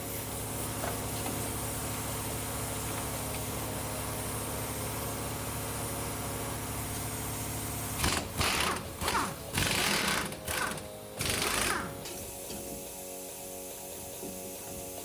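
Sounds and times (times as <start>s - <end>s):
power tool hammering: 7.9s - 12.9s.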